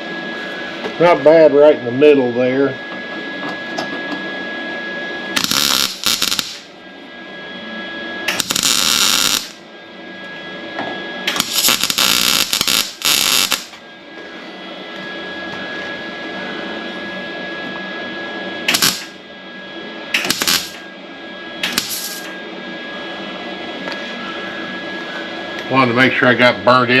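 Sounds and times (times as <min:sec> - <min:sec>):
steady hum: 0:00.0 - 0:27.0
welding arc crackling: 0:05.4 - 0:06.7, 0:08.3 - 0:09.6, 0:11.3 - 0:13.8, 0:18.7 - 0:19.2, 0:20.1 - 0:20.8, 0:21.6 - 0:22.3.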